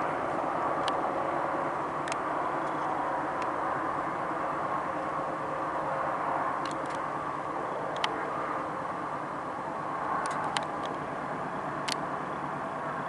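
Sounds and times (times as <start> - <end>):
freight train rumbling by: 0.0 - 13.0
sharp clicks: 6.6 - 7.0, 7.9 - 8.2, 10.2 - 11.0, 11.8 - 12.0.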